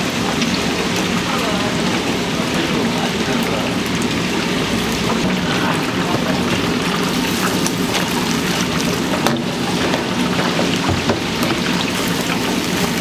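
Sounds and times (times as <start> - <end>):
chicken deep-frying in hot oil: 0.0 - 13.0.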